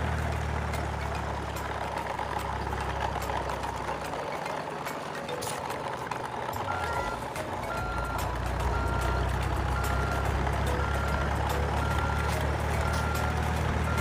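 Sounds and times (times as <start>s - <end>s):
recorded truck engine hum: 0.0s - 14.0s
high reversing beep: 6.7s - 14.0s.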